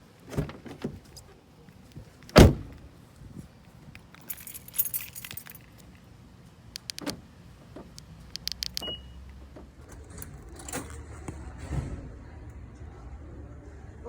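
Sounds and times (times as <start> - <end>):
bright metallic jingling: 4.1 - 6.0
small clicks: 6.7 - 7.2, 7.9 - 9.4.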